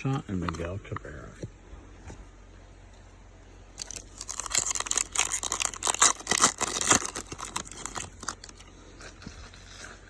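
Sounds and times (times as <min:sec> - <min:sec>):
wrapper tearing and crinkling: 0:03.8 - 0:08.6.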